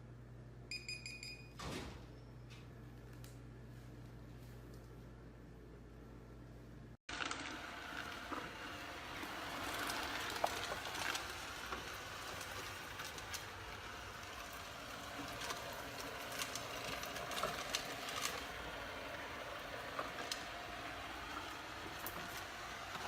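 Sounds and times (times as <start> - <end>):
robot vacuum whirring: 7.1 - 23.0.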